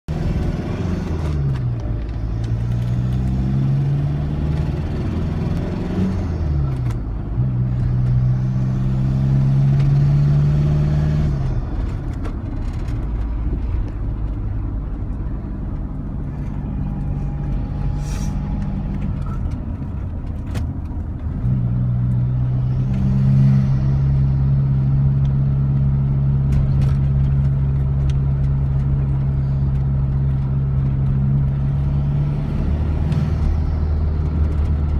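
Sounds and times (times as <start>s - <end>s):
van engine revving: 0.1s - 34.9s.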